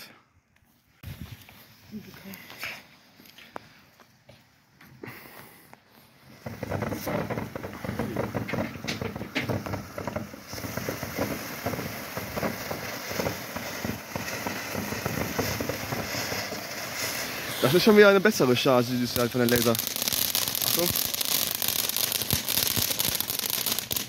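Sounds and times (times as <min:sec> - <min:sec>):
firework crackling and popping: 0:05.0 - 0:24.0.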